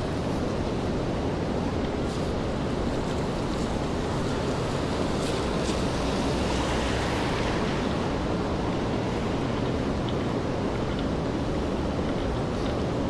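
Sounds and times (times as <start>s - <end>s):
rain on pavement: 2.8s - 10.3s.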